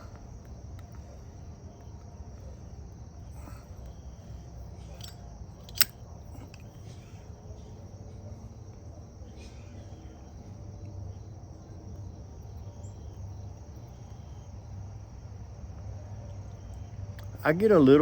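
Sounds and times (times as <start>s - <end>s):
background hum: 0.0s - 18.0s.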